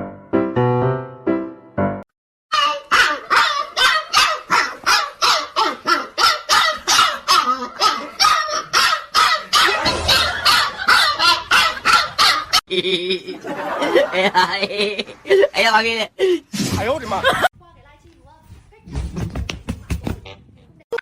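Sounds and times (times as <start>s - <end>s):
dog barking rapidly: 2.6s - 12.6s.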